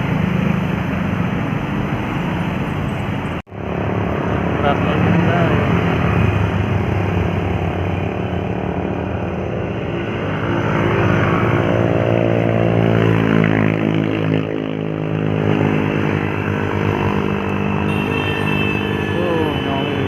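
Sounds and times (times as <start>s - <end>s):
truck diesel engine labouring: 16.1s - 20.0s.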